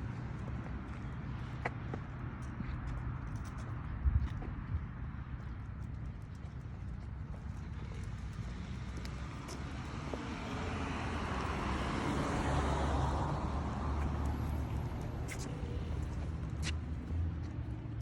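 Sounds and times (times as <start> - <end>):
car passing on wet road: 9.9 - 15.2.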